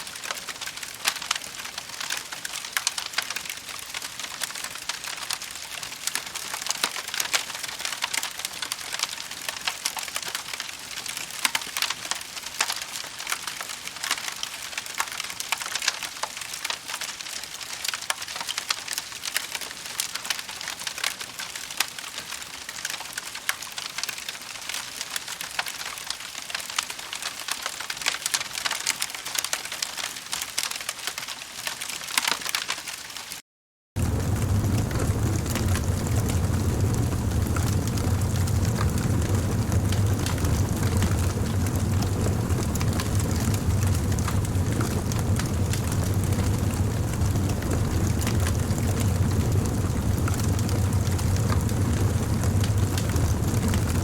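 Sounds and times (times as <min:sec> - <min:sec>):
wood fire crackling: 0:00.2 - 0:18.5, 0:34.0 - 0:54.0
loud fire pops: 0:34.0 - 0:54.0.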